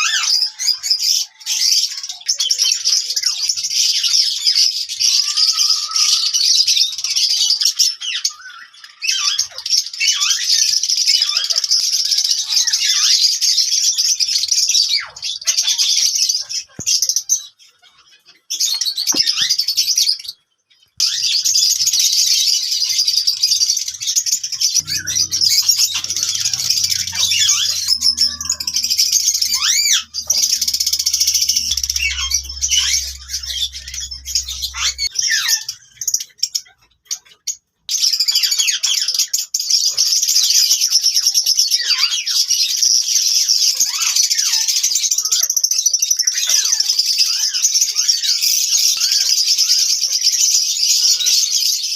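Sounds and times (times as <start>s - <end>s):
lovebirds chattering and chirping: 21.1s - 36.0s.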